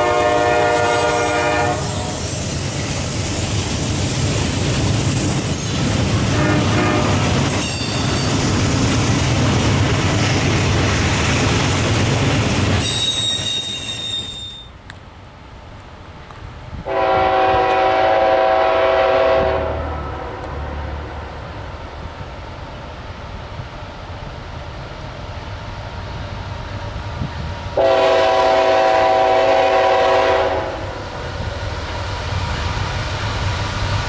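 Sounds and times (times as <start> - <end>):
locomotive air horn chord: 0.0 - 2.2, 6.3 - 7.2, 16.8 - 20.4, 27.8 - 31.0
train horn: 0.0 - 2.2, 6.3 - 8.2, 16.8 - 20.6, 27.8 - 31.0
train rumbling and clattering: 0.0 - 34.0
high squeal: 7.5 - 8.4, 12.8 - 14.8.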